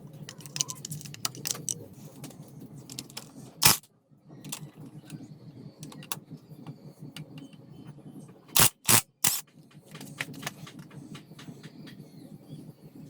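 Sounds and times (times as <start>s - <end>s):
clicks and scrapes of tools: 0.3s - 1.8s, 2.9s - 3.8s, 8.6s - 9.4s.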